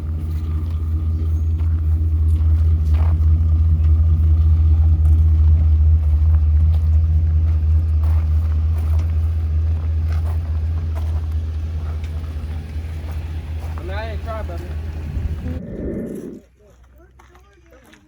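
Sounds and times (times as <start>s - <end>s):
engine rumbling: 0.0s - 18.0s.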